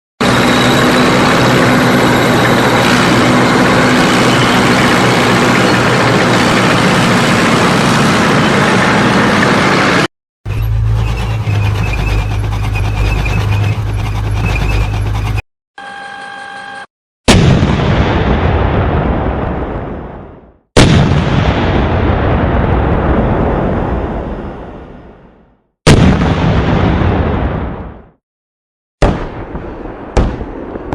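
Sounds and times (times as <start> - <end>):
tank engine and track clatter: 0.2 - 15.4
deep engine rumble: 0.3 - 15.4.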